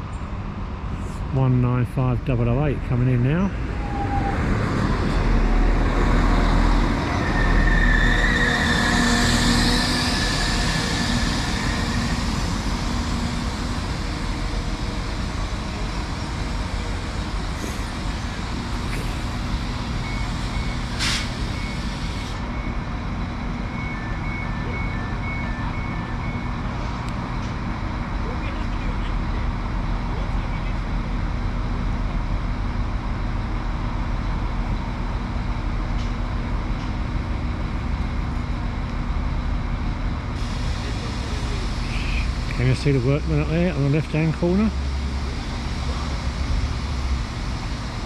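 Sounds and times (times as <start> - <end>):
train engine and wheel rumble: 0.0 - 48.0
high brake squeal: 3.7 - 4.6, 7.0 - 13.5, 17.5 - 22.7.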